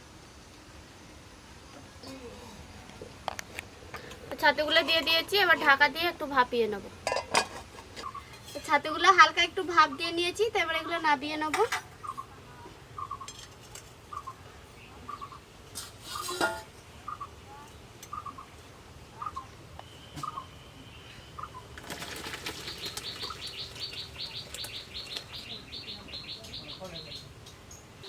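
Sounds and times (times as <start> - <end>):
bird chirping: 8.0 - 8.4, 12.0 - 12.4, 13.0 - 13.4, 14.0 - 15.5, 17.0 - 28.0.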